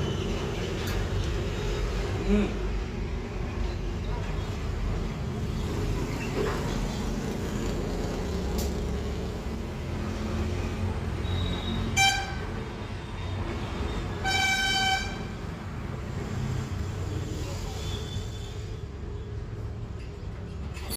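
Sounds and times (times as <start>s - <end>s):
vehicle horn beeps: 11.2s - 12.6s, 13.9s - 15.3s.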